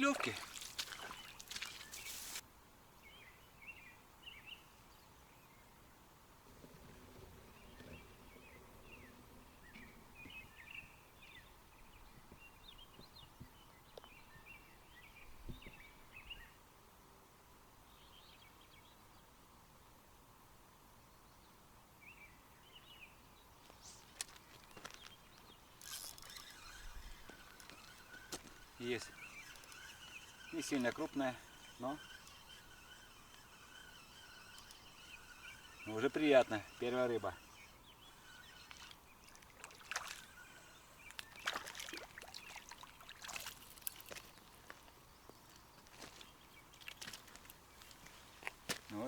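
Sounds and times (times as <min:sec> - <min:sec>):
rustling: 0:00.0 - 0:02.4, 0:23.7 - 0:41.6
small water splashes: 0:00.0 - 0:02.4, 0:36.6 - 0:44.6
faint bird chirps: 0:21.1 - 0:48.2.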